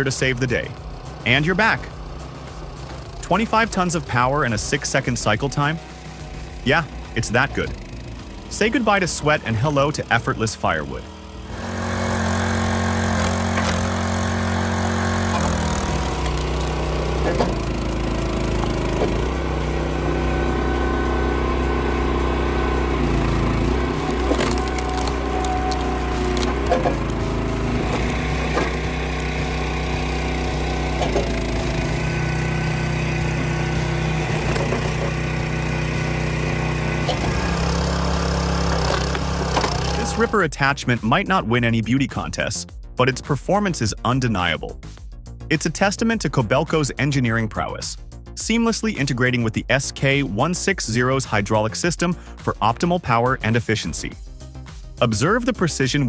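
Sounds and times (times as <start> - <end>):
log splitter engine running: 0.0 - 40.5
wood cracking and splitting: 11.5 - 19.4, 22.9 - 40.3.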